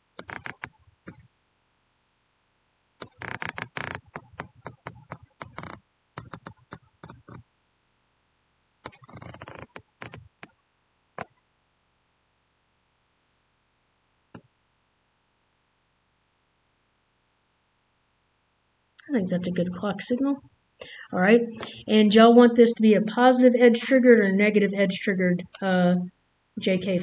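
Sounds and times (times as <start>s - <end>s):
keyboard and mouse clicking: 0.2s - 1.2s, 3.0s - 7.4s, 8.8s - 10.2s.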